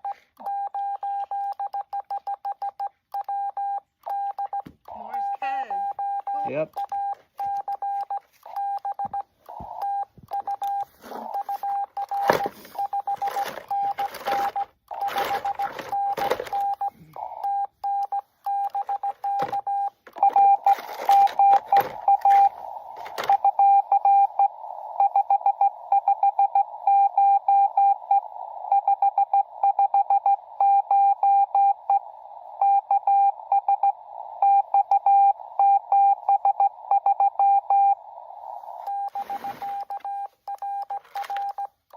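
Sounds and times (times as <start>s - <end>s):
morse code tone: 0.0s - 28.1s, 38.8s - 41.8s
radio hiss: 4.9s - 6.8s, 9.3s - 13.6s, 20.6s - 29.6s, 36.6s - 40.0s
rustling and knocking handling noise: 7.1s - 16.7s, 18.8s - 23.4s.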